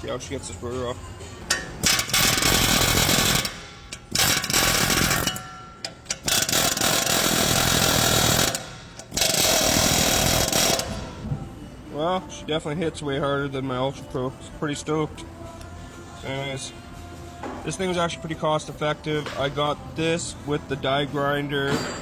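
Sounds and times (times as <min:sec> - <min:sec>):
pneumatic air hammer bursts: 0:01.5 - 0:05.4, 0:06.0 - 0:11.2.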